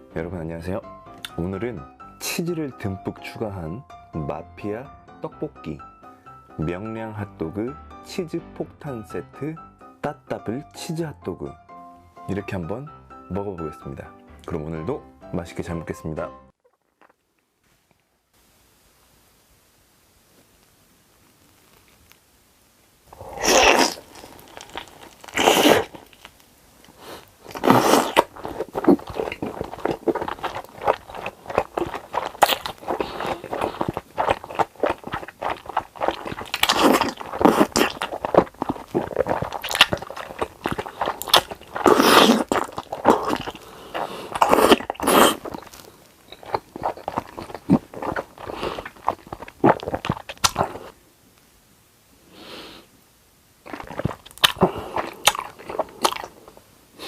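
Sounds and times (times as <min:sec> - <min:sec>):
crunchy bites into crisp food: 0:23.1 - 0:50.9, 0:53.7 - 0:56.6
moist chewing clicks: 0:23.2 - 0:50.9, 0:53.7 - 0:56.6.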